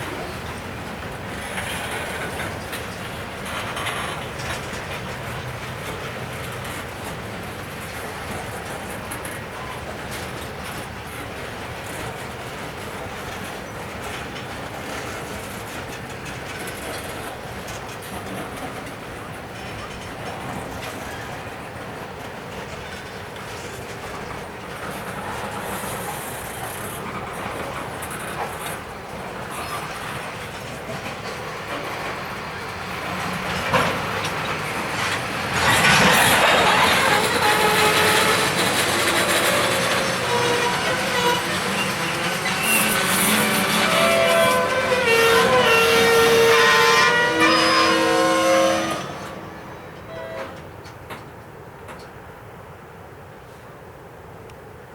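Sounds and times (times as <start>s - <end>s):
rail clack: 0.0s - 54.8s
freight train wheels rumbling: 0.0s - 54.9s
wheels squealing: 25.2s - 50.7s.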